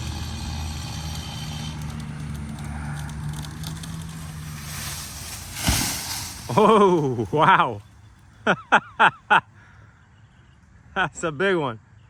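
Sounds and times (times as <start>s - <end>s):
tree crashing to the ground: 0.0s - 7.8s
engine idling: 0.0s - 7.9s
wood crackling: 0.0s - 8.3s.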